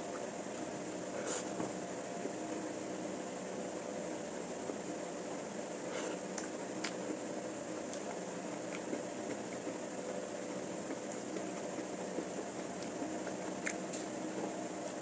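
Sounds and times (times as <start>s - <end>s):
machine hum: 0.0s - 15.0s
eating smacks and clicks: 6.2s - 7.2s, 7.8s - 9.8s, 10.5s - 15.0s.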